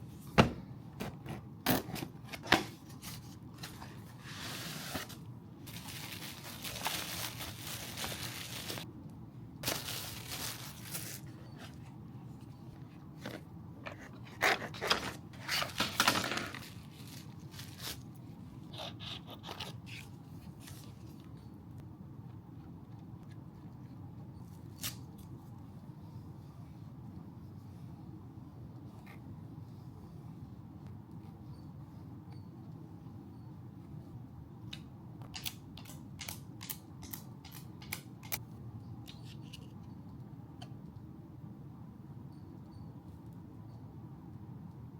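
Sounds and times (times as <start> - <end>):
packaging scraping and crinkling: 1.7 - 8.8, 9.6 - 11.8, 13.2 - 18.1.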